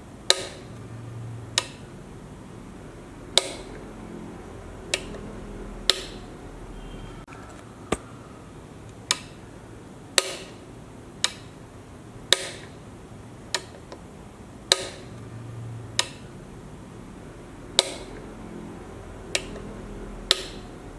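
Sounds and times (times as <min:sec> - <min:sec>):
power switch clicking: 0:00.3 - 0:00.9, 0:01.5 - 0:01.9, 0:03.3 - 0:03.9, 0:04.8 - 0:06.3, 0:09.0 - 0:09.4, 0:11.2 - 0:11.6, 0:12.3 - 0:12.8, 0:13.5 - 0:14.0, 0:14.7 - 0:15.2, 0:15.9 - 0:16.3, 0:17.8 - 0:18.3, 0:19.3 - 0:20.7.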